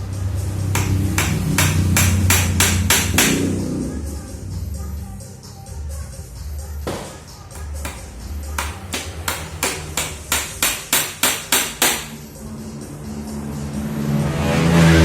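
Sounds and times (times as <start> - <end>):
hammer driving nails into wood: 0.8 - 3.5, 6.9 - 12.1.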